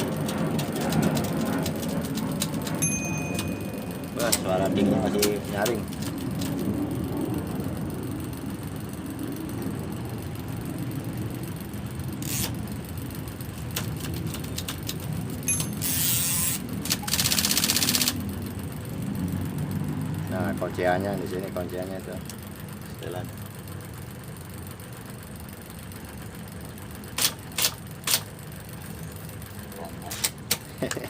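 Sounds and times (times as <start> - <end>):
typewriter click: 0.0 - 3.6, 13.6 - 18.2, 27.2 - 28.3
typewriter mechanical clatter: 0.0 - 6.8, 12.2 - 18.4, 27.0 - 28.4, 30.0 - 31.0
typewriter motor hum: 0.0 - 31.0.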